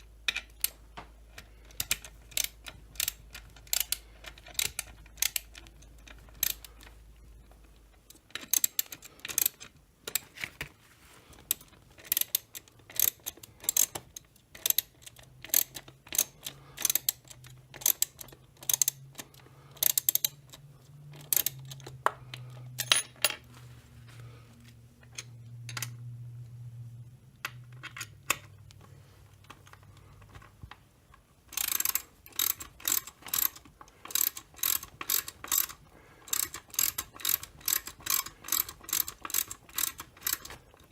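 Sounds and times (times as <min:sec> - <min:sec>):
hand ratchet clicking: 0:00.0 - 0:07.0, 0:07.7 - 0:10.3, 0:11.4 - 0:22.9, 0:31.5 - 0:40.9.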